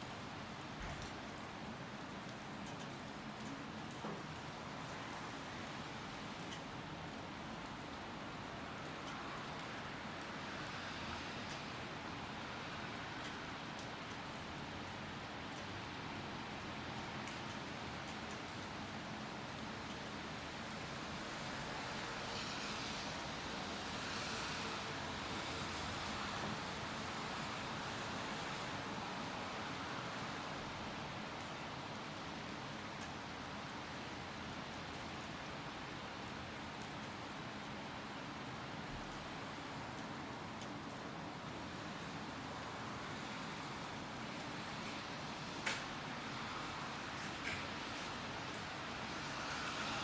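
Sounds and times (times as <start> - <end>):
rain hissing: 42.0 - 50.0.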